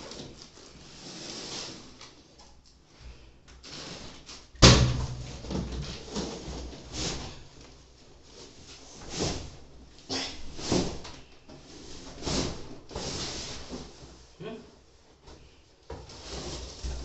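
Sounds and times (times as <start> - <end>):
heavy thump: 4.6 - 5.4.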